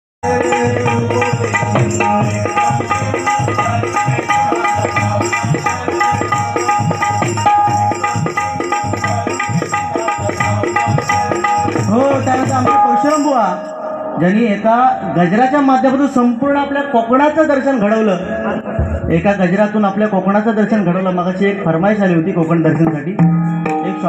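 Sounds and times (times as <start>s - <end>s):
hand drum beat: 0.2s - 12.9s
sustained held notes: 0.2s - 14.4s.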